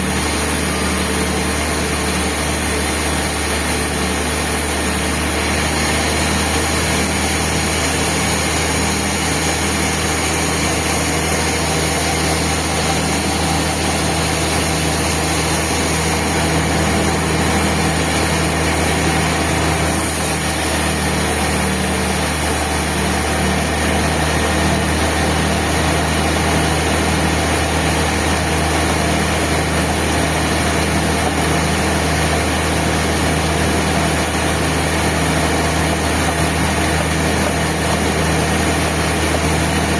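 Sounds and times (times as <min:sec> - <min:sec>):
band sawmill machine drone: 0:00.0 - 0:39.9.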